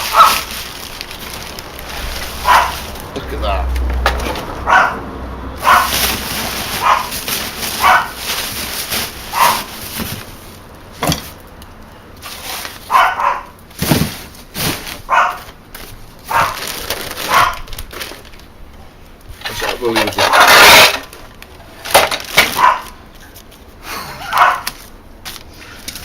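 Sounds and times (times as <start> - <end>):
dog barking: 0.0 - 0.5, 2.4 - 2.9, 4.6 - 5.0, 5.6 - 6.0, 6.8 - 7.2, 7.8 - 8.2, 9.3 - 9.7, 12.9 - 13.6, 15.1 - 15.5, 16.3 - 16.6, 17.3 - 17.7, 22.5 - 23.0, 24.2 - 24.7.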